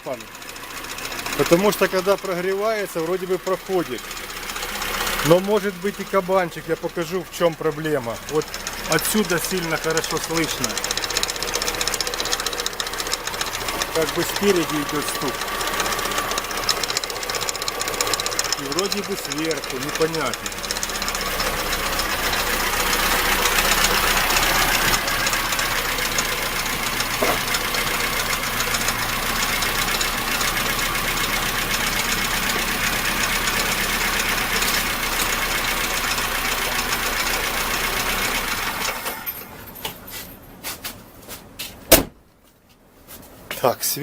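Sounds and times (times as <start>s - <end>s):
car engine idling with knock: 0.0s - 40.0s
sharp knock: 41.9s - 42.2s.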